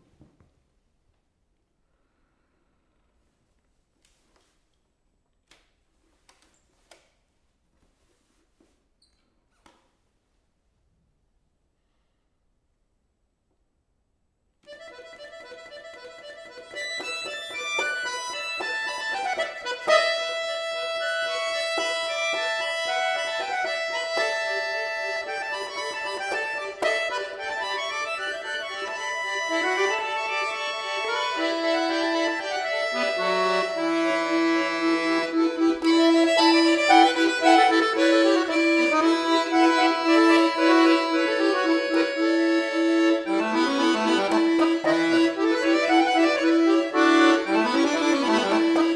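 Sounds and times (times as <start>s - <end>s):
solo accordion: 14.6s - 48.9s.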